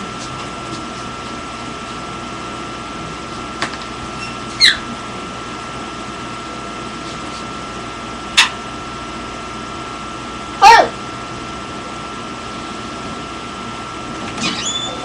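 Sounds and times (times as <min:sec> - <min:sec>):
parrot squawks: 0:04.6 - 0:04.8.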